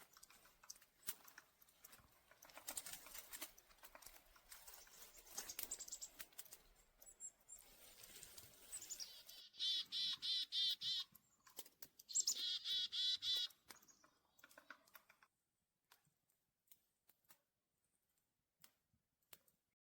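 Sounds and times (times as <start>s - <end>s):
light clicks and rustles: 0.0s - 9.0s, 11.2s - 12.1s, 13.6s - 15.3s
songbird calling: 4.8s - 6.2s, 8.6s - 11.4s, 12.1s - 14.5s.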